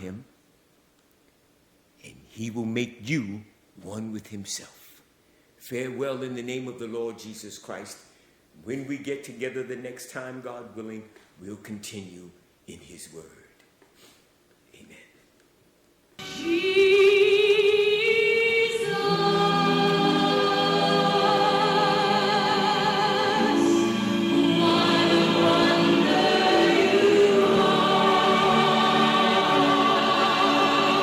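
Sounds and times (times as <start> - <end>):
choir singing long notes: 16.2 - 31.0.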